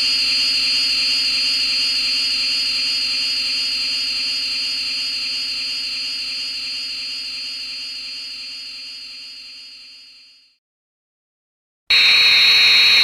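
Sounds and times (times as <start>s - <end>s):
electronic machine hum: 11.9s - 13.0s
high wavering electronic tone: 11.9s - 13.0s.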